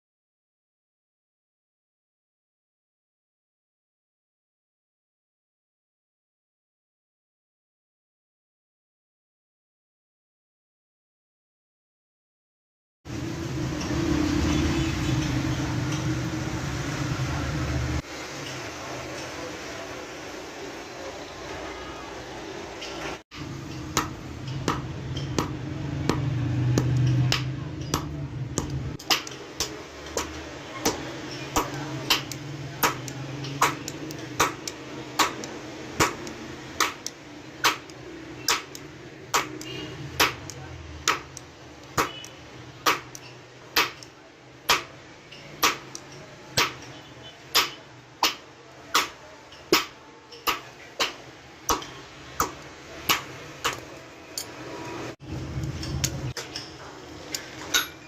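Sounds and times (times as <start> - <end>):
hammer striking metal on anvil: 23.4 - 44.1, 45.6 - 46.9, 47.5 - 53.8.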